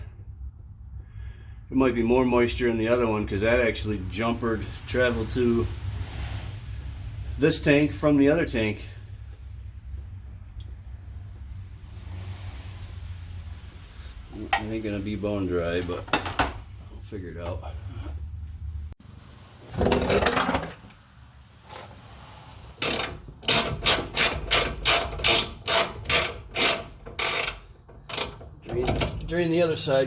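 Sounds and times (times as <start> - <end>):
low hum: 0.0 - 23.3
air hissing from tank drain: 4.1 - 10.0, 10.6 - 15.5
hand tool scraping a fitting: 22.8 - 29.2.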